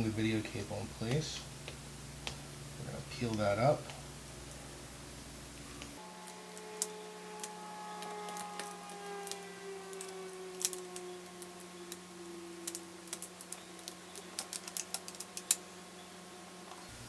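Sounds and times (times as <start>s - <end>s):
faint steady hum: 0.0s - 17.0s
fingers clicking on laptop parts: 6.2s - 12.0s, 12.6s - 15.6s.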